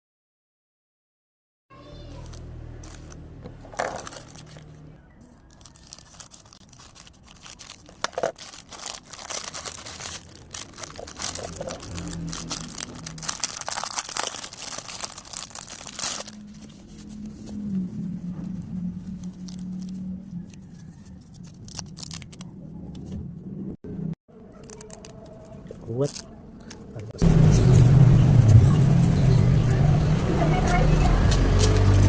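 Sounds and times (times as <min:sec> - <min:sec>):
plastic packaging crinkling: 0:02.1 - 0:17.6, 0:19.0 - 0:22.5, 0:24.5 - 0:26.8.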